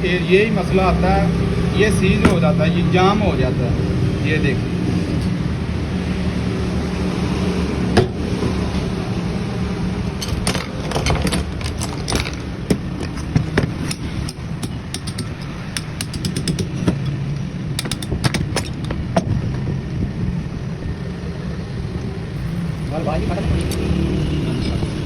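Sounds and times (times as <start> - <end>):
metal clicks and taps: 10.2 - 17.2, 17.8 - 19.3.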